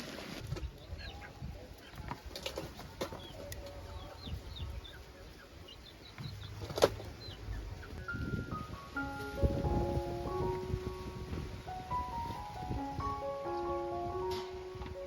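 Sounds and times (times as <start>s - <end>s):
small birds chirping: 0.5s - 9.0s.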